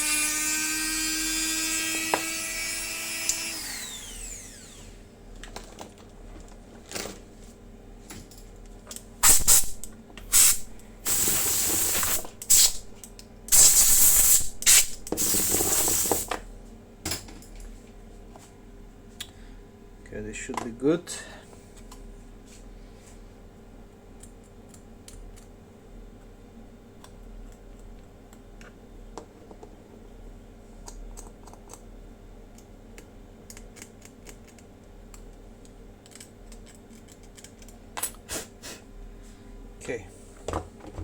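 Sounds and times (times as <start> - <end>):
electric motor whining: 0.0 - 5.0
short hissing rattling bursts: 9.2 - 12.8, 13.5 - 16.3.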